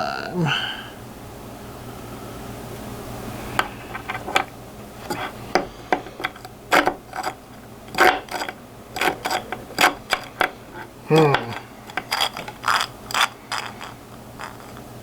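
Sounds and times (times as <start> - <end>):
plastic parts clicking and knocking: 3.6 - 14.9.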